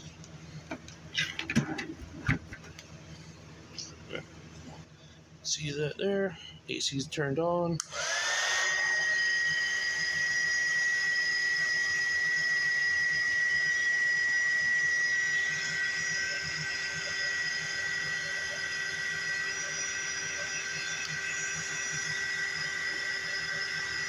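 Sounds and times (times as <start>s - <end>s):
heat gun fan whine and hiss: 5.7s - 24.0s.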